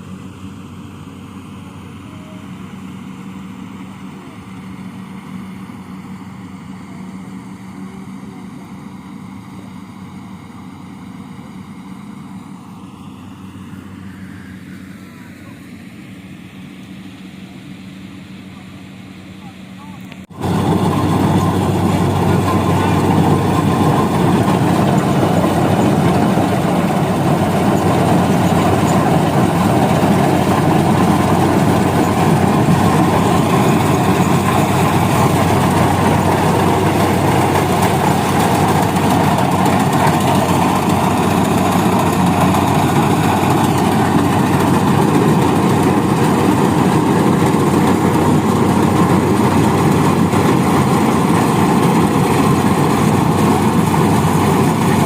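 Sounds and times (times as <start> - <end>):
harvester engine running: 20.2 - 55.0.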